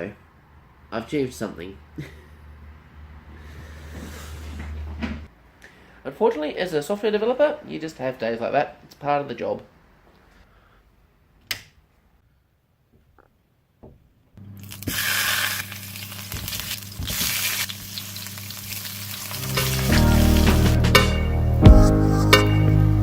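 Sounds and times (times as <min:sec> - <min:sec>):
steady hiss: 0:14.7 - 0:21.2
music with sustained notes: 0:19.4 - 0:23.0.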